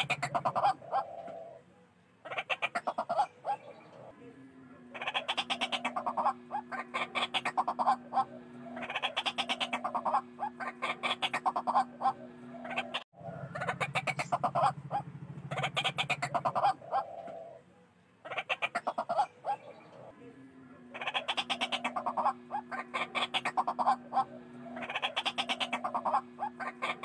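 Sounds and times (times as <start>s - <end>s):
waterhens calling harshly: 4.9s - 17.6s, 20.9s - 27.0s.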